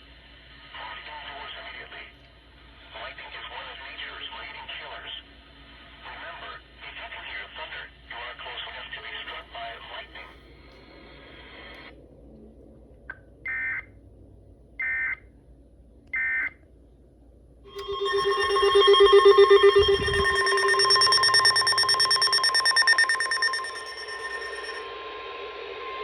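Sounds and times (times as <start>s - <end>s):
pulsing alarm tones: 17.7s - 24.9s
steady alarm tone: 17.7s - 24.9s
digital data bursts: 17.8s - 24.8s.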